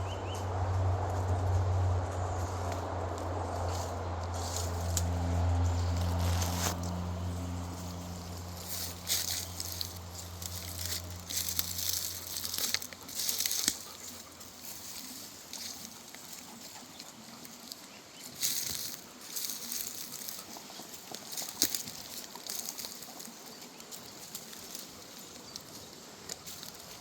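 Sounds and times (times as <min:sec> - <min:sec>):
low hum: 0:00.0 - 0:16.0.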